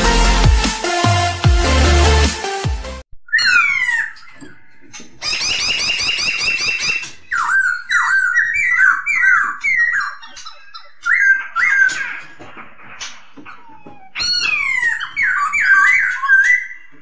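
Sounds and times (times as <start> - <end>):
bird chattering trill: 5.2 - 12.4.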